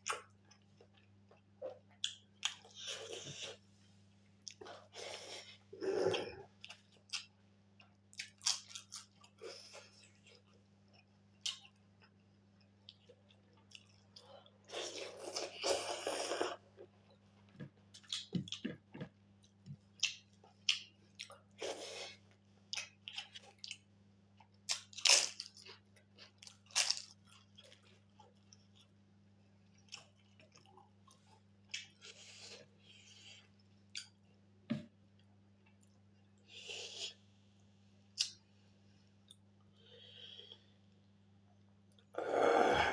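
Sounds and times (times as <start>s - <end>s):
person chewing and crunching: 4.4s - 16.9s, 17.7s - 29.0s, 29.7s - 34.2s.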